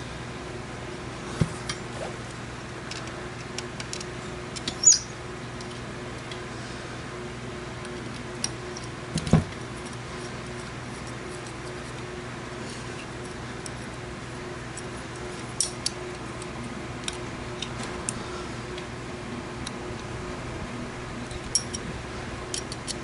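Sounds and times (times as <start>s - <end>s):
steady low hum: 0.0s - 23.0s
small metallic clicks: 22.5s - 23.0s.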